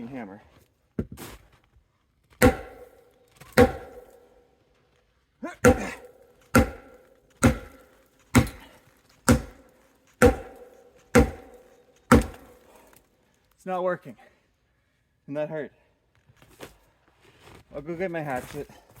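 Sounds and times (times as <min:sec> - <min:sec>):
hammer pounding a log: 0:02.4 - 0:04.3, 0:05.6 - 0:12.8.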